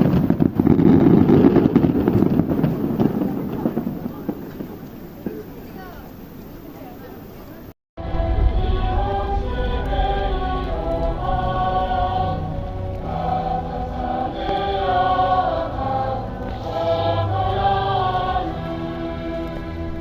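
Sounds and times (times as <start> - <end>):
choral singing: 8.0 - 20.0.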